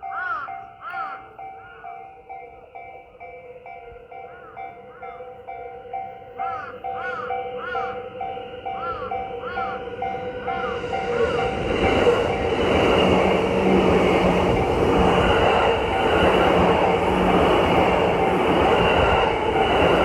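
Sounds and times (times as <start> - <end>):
level crossing warning bell: 0.0 - 20.0
electric train rushing past: 4.5 - 20.0.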